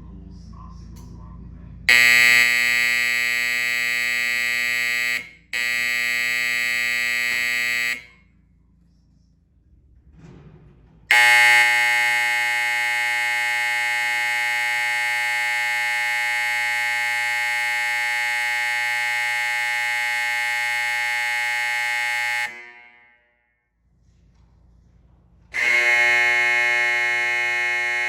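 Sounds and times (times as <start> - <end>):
fire alarm horn tone: 1.9 - 8.3, 11.1 - 23.5, 25.6 - 28.0.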